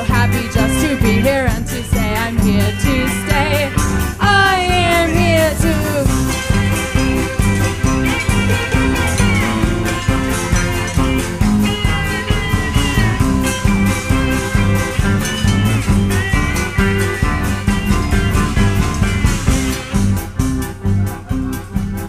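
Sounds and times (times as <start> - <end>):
bass and steady beat: 0.0 - 22.0
lead guitar with bending notes: 0.0 - 22.0.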